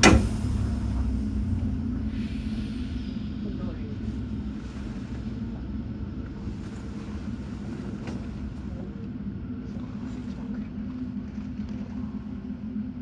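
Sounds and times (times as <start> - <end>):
train rumbling: 0.0 - 12.3.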